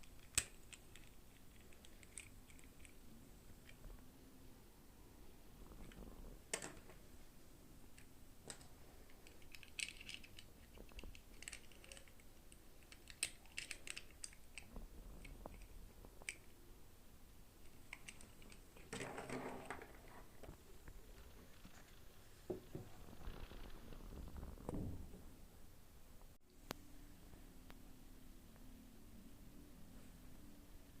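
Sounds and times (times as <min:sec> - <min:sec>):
clicks of plastic toy parts: 0:08.5 - 0:12.2, 0:12.8 - 0:14.7.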